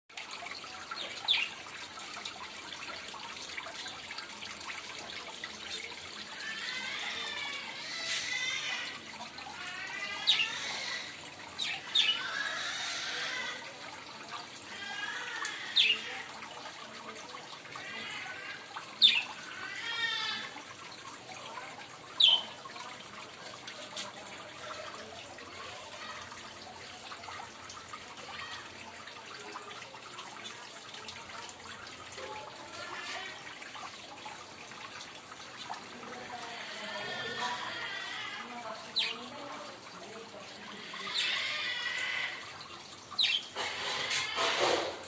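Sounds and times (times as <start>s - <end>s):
parrot squawking: 36.5s - 38.4s, 40.8s - 42.4s.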